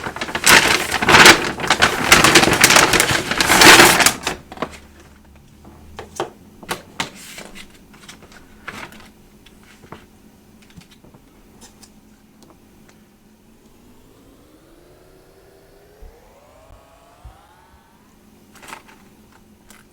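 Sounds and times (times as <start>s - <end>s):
crackling and rustling while eating: 0.0s - 13.0s.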